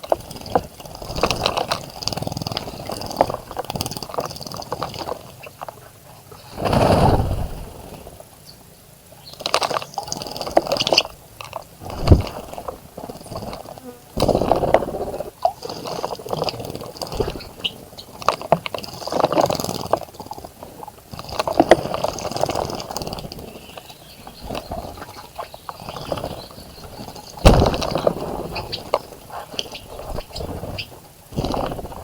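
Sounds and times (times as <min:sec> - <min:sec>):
birds splashing in water: 0:09.3 - 0:32.0.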